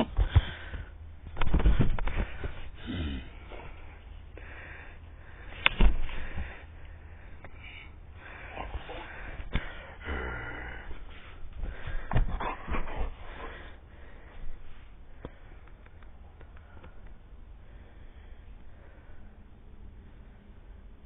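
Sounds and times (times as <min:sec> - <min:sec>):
dog sniffing and snorting: 0:12.0 - 0:13.7.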